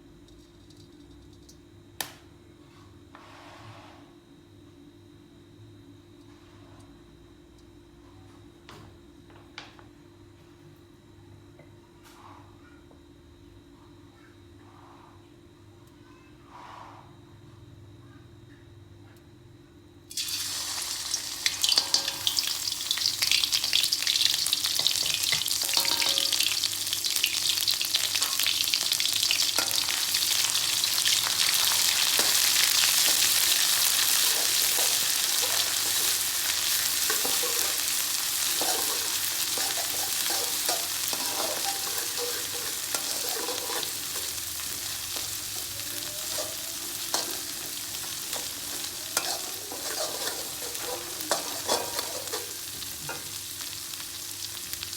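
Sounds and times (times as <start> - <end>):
food sizzling in hot oil: 20.1 - 54.9
utensil stirring and scraping: 38.6 - 45.6, 46.3 - 53.2.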